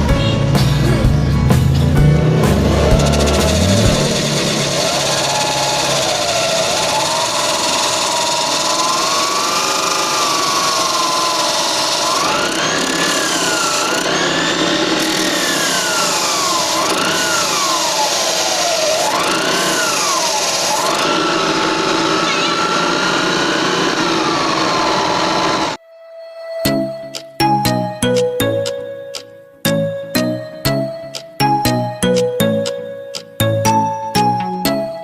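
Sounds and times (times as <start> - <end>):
drum sander rushing noise: 0.7 - 25.8
electric drill motor whine: 3.0 - 25.8.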